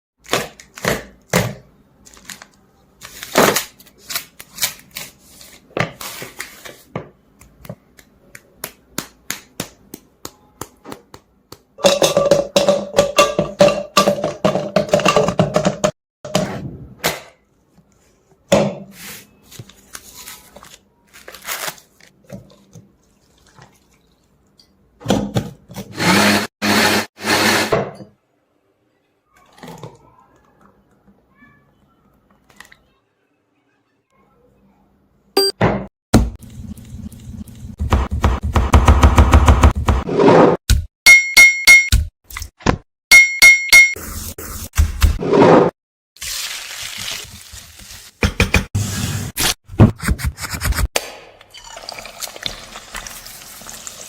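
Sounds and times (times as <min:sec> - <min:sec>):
utensils knocking and clattering: 0:11.8 - 0:16.4
blender running: 0:26.0 - 0:27.7.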